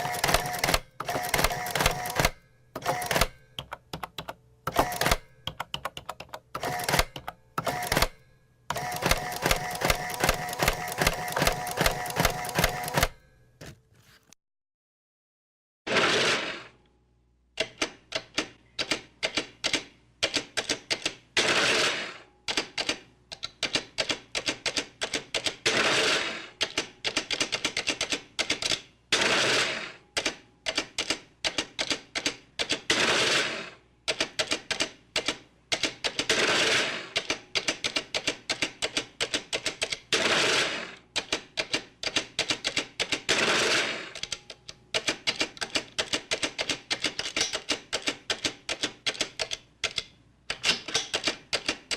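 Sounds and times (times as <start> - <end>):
adding machine mechanical cycle: 0.0 - 8.1, 8.7 - 13.1
adding machine key clicks: 0.0 - 8.2.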